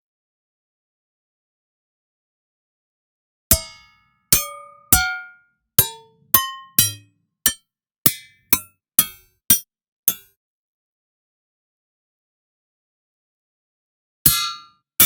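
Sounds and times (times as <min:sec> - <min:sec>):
struck metal percussion hits: 0:04.4 - 0:07.0.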